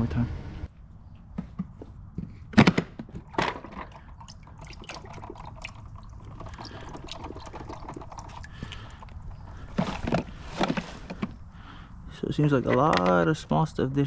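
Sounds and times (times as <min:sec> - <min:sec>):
water pouring and splashing: 0:03.2 - 0:10.2.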